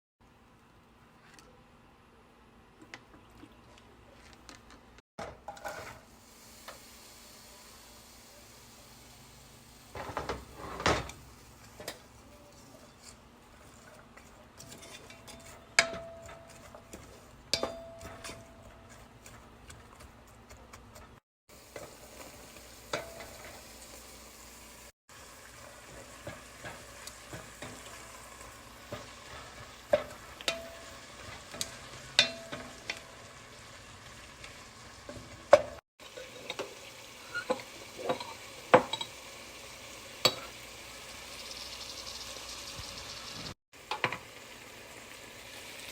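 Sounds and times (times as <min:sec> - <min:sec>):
food sizzling in a pan: 0:05.5 - 0:13.9, 0:21.5 - 0:45.9.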